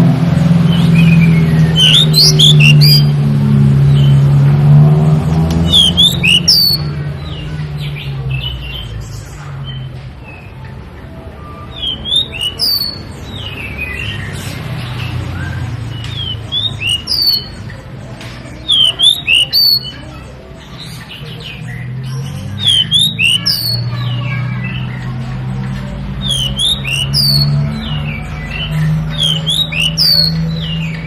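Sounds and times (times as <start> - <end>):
bird singing whistled notes: 0.7 - 3.2, 5.6 - 7.0, 11.5 - 14.5, 15.3 - 17.6, 18.7 - 20.0, 21.6 - 24.2, 26.2 - 31.0.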